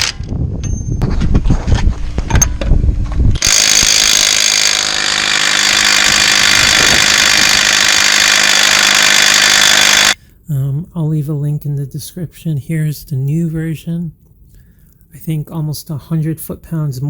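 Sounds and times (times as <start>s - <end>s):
impact wrench hammering: 3.4s - 10.2s.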